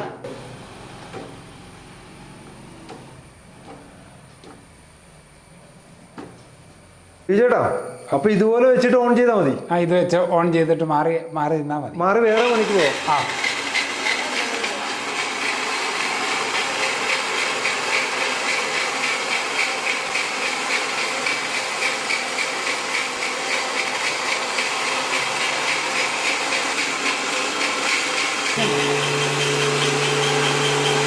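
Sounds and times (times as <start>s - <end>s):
steady hum: 0.0s - 13.3s
slicing machine rattling: 12.4s - 31.0s.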